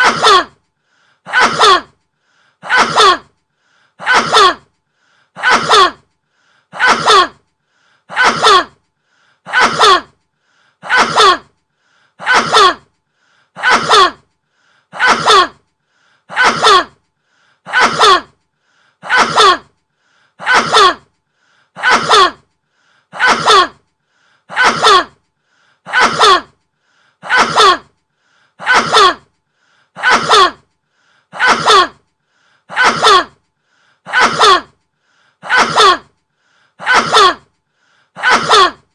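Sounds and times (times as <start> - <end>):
person sneezing: 0.0 - 0.6, 1.3 - 2.0, 2.6 - 3.4, 4.0 - 4.7, 5.4 - 6.1, 6.7 - 7.4, 8.1 - 8.8, 9.5 - 10.2, 10.8 - 11.6, 12.2 - 12.9, 13.6 - 14.3, 14.9 - 15.6, 16.3 - 17.0, 17.7 - 18.4, 19.0 - 19.8, 20.4 - 21.1, 21.8 - 22.5, 23.1 - 23.8, 24.5 - 25.2, 25.9 - 26.6, 27.2 - 28.0, 28.6 - 29.3, 30.0 - 30.7, 31.3 - 32.0, 32.7 - 33.4, 34.1 - 34.8, 35.4 - 36.2, 36.8 - 37.5, 38.2 - 38.9.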